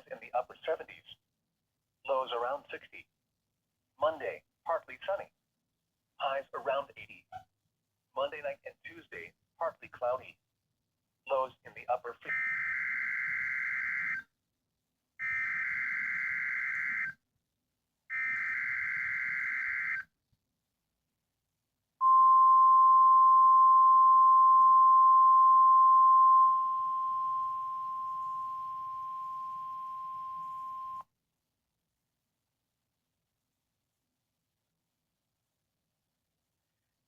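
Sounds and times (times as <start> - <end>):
steady warning alarm tone: 15.2 - 17.2, 18.1 - 20.1, 22.0 - 31.0.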